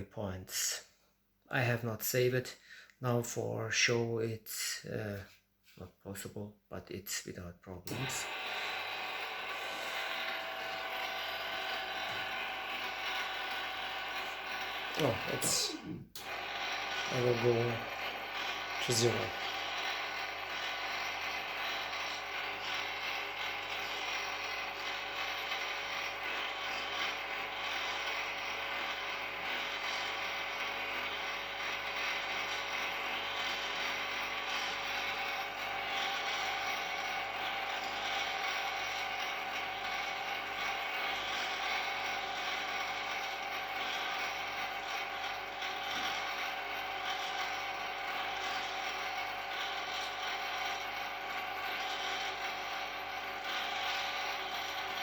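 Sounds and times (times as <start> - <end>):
antenna rotator motor running: 7.9 - 55.0.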